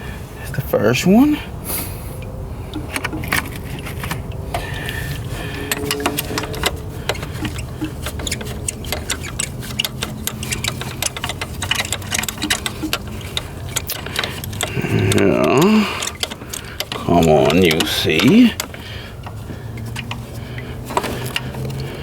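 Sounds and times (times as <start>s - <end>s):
ratchet wrench clicking: 5.7s - 20.3s.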